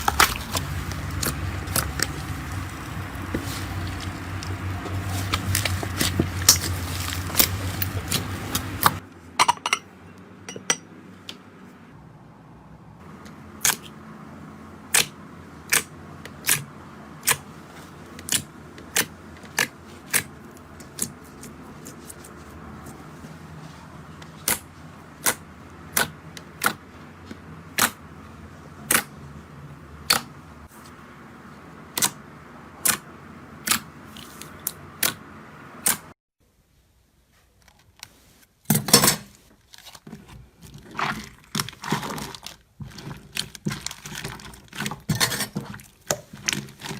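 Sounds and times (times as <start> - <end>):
slime crackling: 0.0 - 9.0, 39.6 - 46.9.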